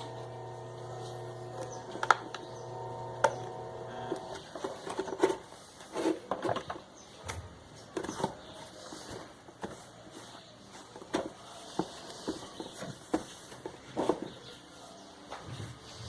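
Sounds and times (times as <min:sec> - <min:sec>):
electric fan motor humming: 0:00.0 - 0:05.4.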